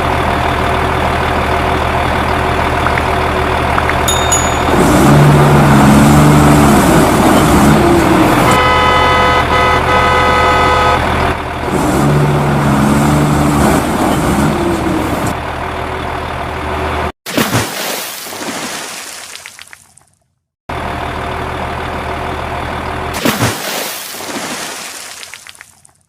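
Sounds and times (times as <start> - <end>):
vehicle engine: 0.0 - 17.2, 20.7 - 23.5
steady horn tone: 8.3 - 11.1.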